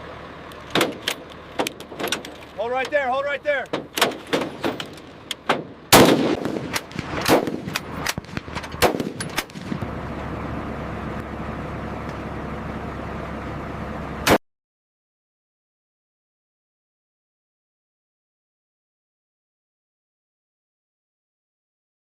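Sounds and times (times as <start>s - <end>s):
single sharp shot: 5.5s - 9.8s, 14.2s - 14.4s.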